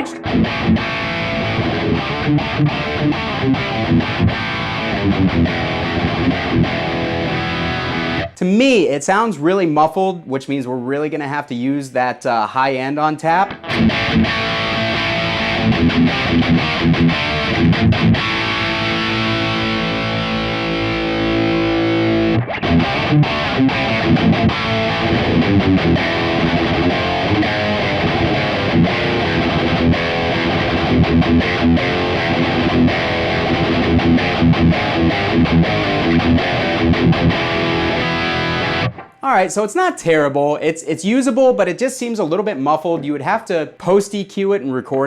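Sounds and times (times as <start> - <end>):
distorted electric guitar riffing: 0.0 - 8.4, 13.5 - 39.6.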